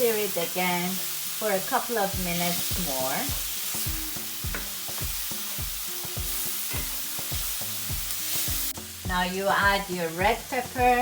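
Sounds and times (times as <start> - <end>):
vegetables sizzling in oil: 0.0 - 11.0
wooden spoon knocking in pan: 4.4 - 7.4.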